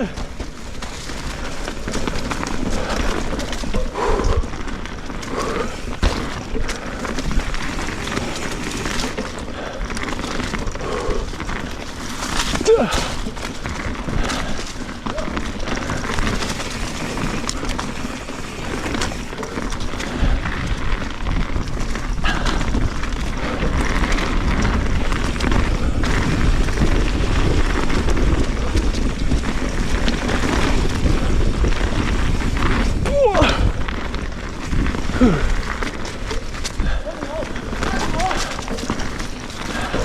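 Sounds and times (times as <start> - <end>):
bike rattling over bumps: 0.0 - 40.0
tyres rolling over dirt and rocks: 0.0 - 40.0
wind buffeting microphone: 15.9 - 40.0.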